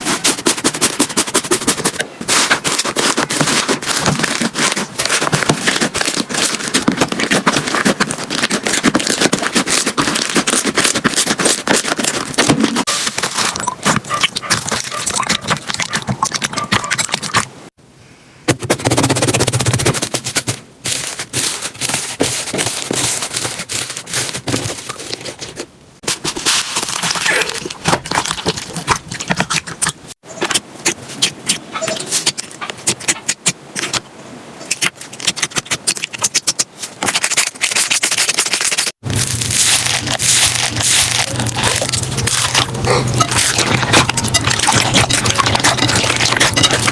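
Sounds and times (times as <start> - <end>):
slime crackling and popping: 2.3 - 17.0, 34.8 - 46.9.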